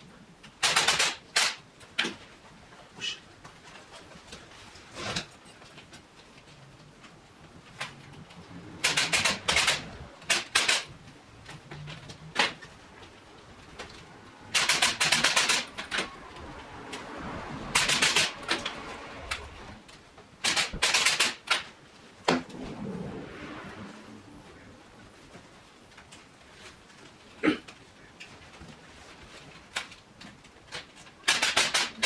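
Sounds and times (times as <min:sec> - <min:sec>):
rapid sharp clicking and tapping: 0:00.6 - 0:02.1, 0:08.8 - 0:11.0, 0:13.8 - 0:16.2, 0:17.8 - 0:18.8, 0:20.4 - 0:21.7, 0:31.2 - 0:32.0.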